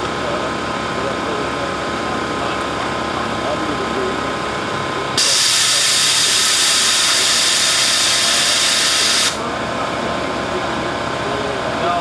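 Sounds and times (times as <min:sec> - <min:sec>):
loud steady hiss: 0:05.2 - 0:09.5.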